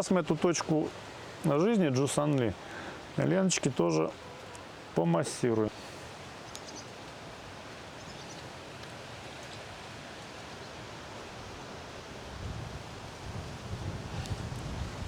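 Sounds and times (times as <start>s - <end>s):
steady background hiss: 0.0s - 15.0s.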